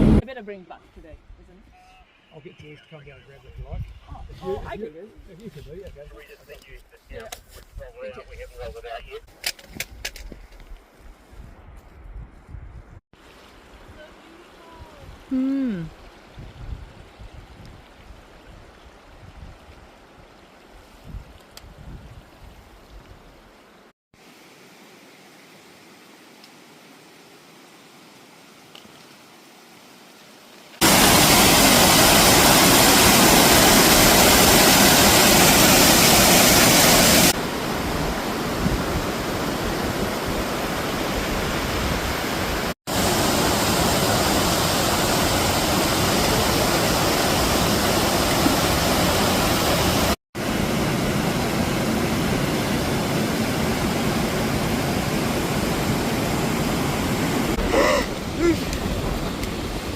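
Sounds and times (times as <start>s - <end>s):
rushing water: 13.2s - 59.9s.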